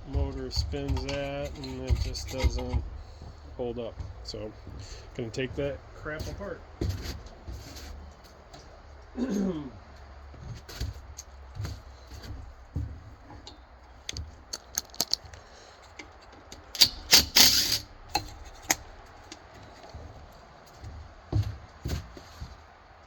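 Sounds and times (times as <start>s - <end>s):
hand tools clinking and knocking: 0.0s - 5.6s, 13.4s - 20.0s
metal parts rattling scrape: 14.1s - 16.0s, 16.7s - 18.8s.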